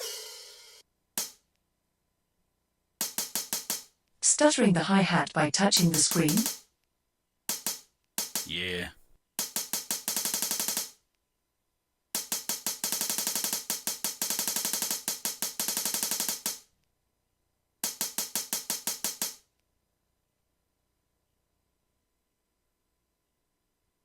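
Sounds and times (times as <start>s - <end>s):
stuttered hi-hat hits: 3.0s - 3.9s, 5.7s - 6.6s, 7.5s - 8.6s, 9.4s - 10.9s, 12.2s - 16.6s.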